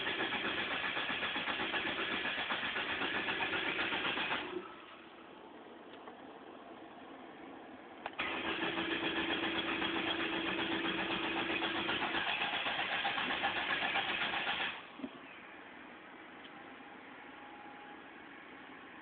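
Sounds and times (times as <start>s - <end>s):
engine cranking: 0.0s - 4.6s, 8.1s - 14.9s.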